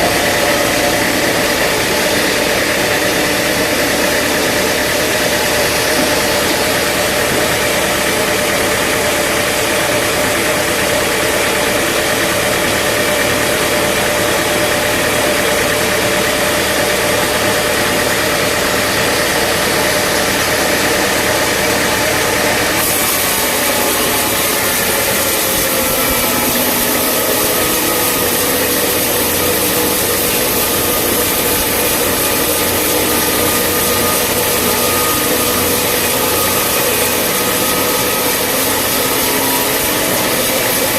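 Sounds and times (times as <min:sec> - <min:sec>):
sawmill machinery engine drone: 0:00.0 - 0:40.9.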